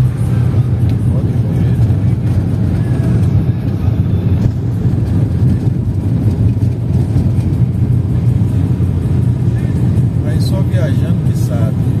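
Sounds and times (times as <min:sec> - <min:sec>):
vehicle driving on dirt road: 0:00.0 - 0:12.0.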